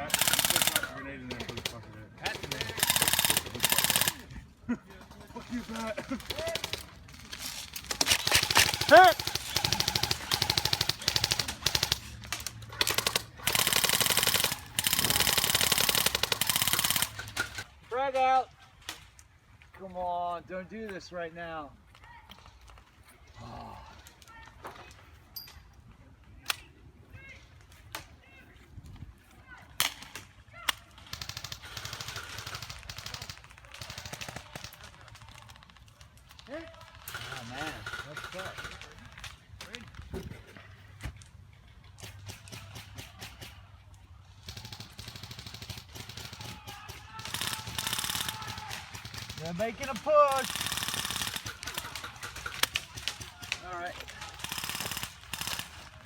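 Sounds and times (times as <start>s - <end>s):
airsoft guns firing: 0.0s - 4.3s, 5.6s - 17.7s, 30.9s - 35.8s, 42.0s - 43.7s, 44.4s - 56.0s.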